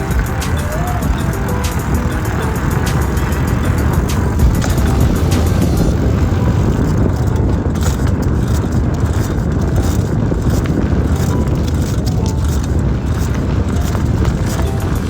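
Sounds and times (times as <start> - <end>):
faint ticks and rattles: 0.0 - 15.0
wind buffeting microphone: 0.0 - 15.0.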